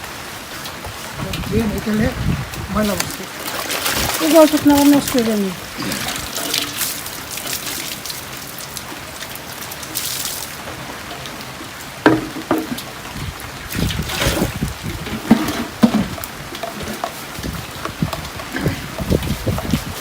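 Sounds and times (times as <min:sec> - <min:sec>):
heavy rain falling: 0:00.0 - 0:20.0
water trickling: 0:00.0 - 0:20.0
knocks and clatters: 0:11.0 - 0:13.0, 0:13.8 - 0:19.9.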